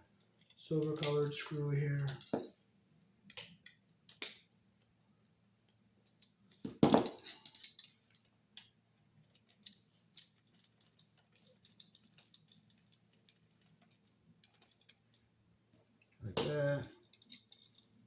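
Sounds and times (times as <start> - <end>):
wire clicking and scraping on screw: 0.1 - 4.6, 7.2 - 15.3, 16.4 - 18.0.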